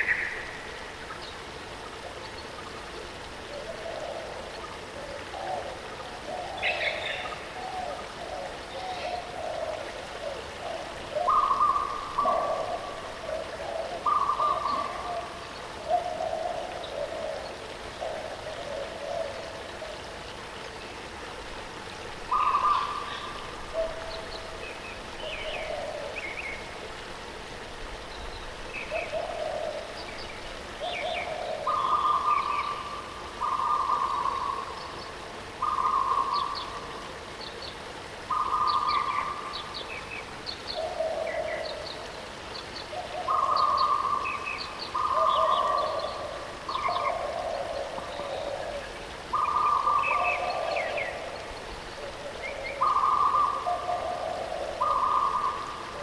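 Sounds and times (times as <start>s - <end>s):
birds calling: 37.4s - 56.0s.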